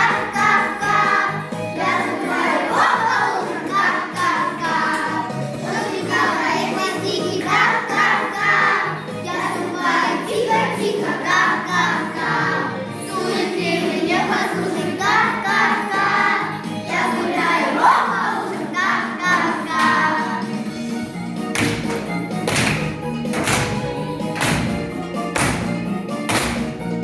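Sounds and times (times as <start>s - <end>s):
group singing with accompaniment: 0.0s - 20.8s.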